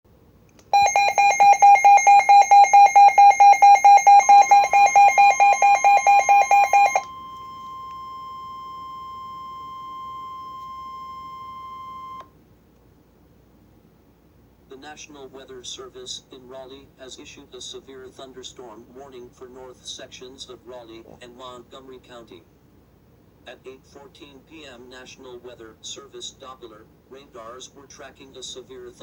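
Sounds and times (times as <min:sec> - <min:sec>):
steady single-pitch warning tone: 0:00.7 - 0:12.3
rapid electronic alarm beeping: 0:00.8 - 0:12.2.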